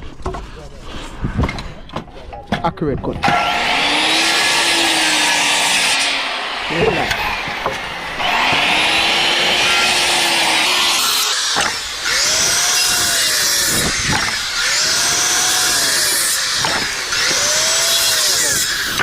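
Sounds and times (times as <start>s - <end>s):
power saw cutting wood: 3.1s - 19.0s
sharp knocks: 11.6s - 11.8s, 14.1s - 14.4s, 16.6s - 17.4s.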